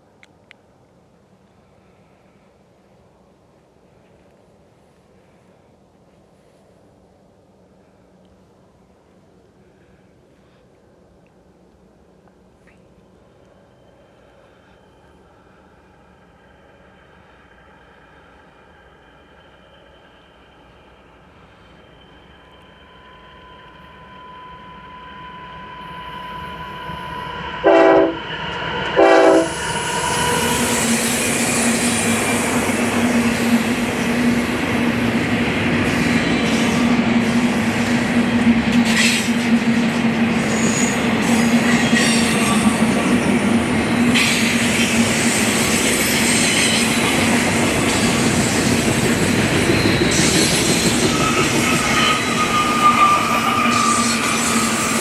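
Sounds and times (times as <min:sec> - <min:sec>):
train passing on rails: 0:00.0 - 0:55.0
train horn blasts: 0:27.6 - 0:28.3, 0:29.0 - 0:29.7.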